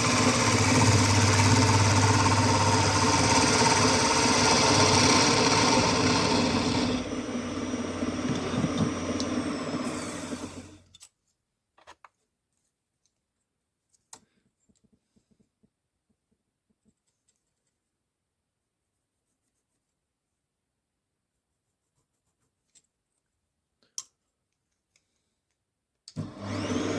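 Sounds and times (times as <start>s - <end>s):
wood lathe motor humming: 0.0s - 10.8s, 26.2s - 26.9s.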